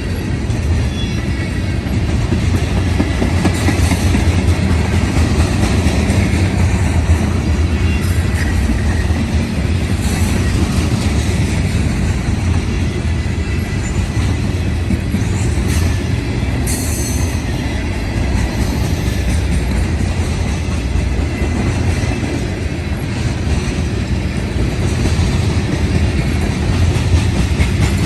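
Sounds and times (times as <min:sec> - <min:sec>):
train wheels rumbling on rail: 0:00.0 - 0:28.0.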